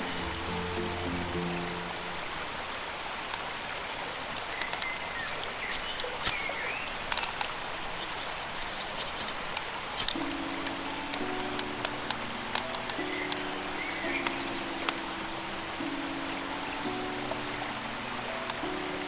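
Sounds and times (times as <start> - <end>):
insect drone: 0.0 - 19.0
running river water: 0.0 - 19.0
light clicks: 4.3 - 13.5.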